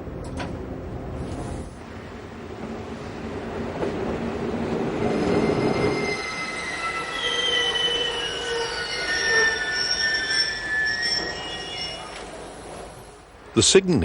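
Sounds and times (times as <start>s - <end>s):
train wheels squealing: 4.9s - 13.2s.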